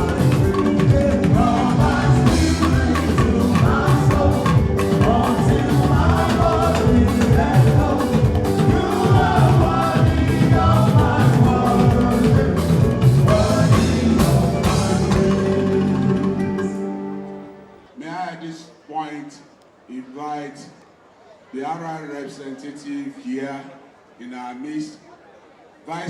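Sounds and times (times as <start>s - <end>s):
steady drum beat: 0.0s - 16.7s
person singing: 0.0s - 17.5s
live band music: 0.0s - 18.0s.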